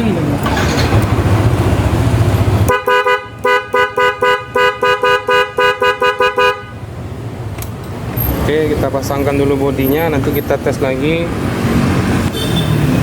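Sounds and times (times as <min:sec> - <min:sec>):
two-tone horn beeps: 0:02.7 - 0:06.8.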